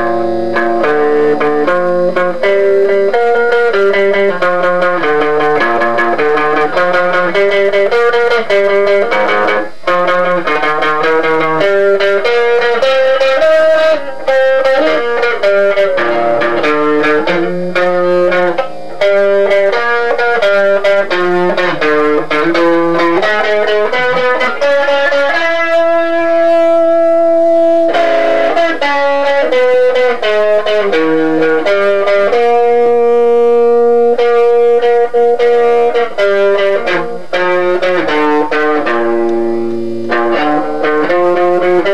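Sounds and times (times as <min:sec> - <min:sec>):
electric guitar solo: 0:00.0 - 0:41.9.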